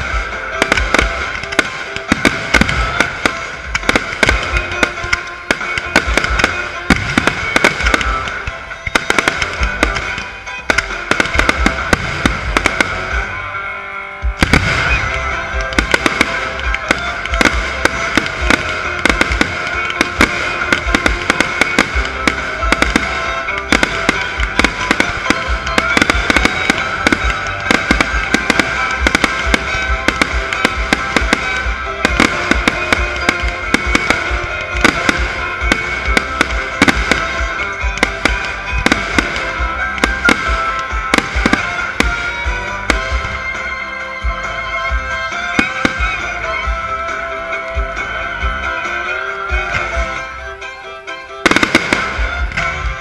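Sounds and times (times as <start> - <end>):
fireworks bangs and crackling: 0.0 - 53.0
music: 0.0 - 53.0
deep thumps: 14.3 - 43.6.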